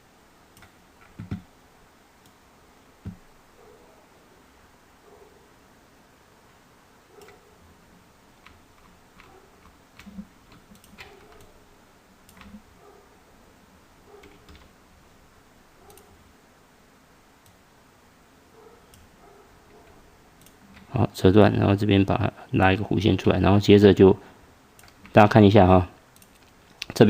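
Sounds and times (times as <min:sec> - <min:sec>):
computer mouse and keyboard clicks: 0:00.6 - 0:01.5, 0:08.4 - 0:11.6, 0:12.2 - 0:12.6, 0:26.2 - 0:27.0.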